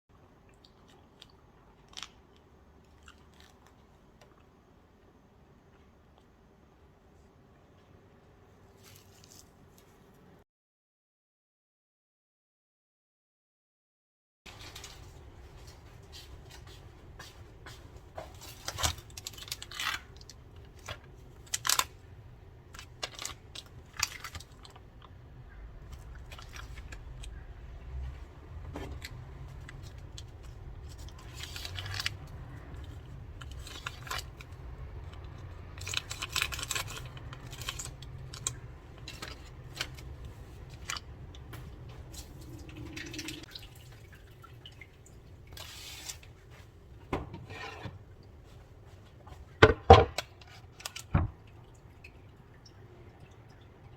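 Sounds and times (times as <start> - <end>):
low steady hum: 14.5 - 53.9.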